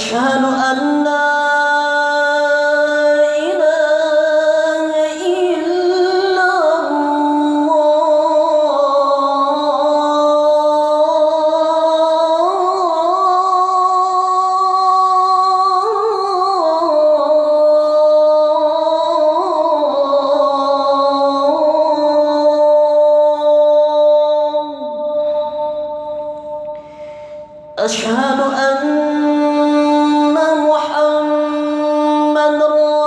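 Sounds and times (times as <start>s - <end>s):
person chanting call to prayer: 27.7s - 33.0s.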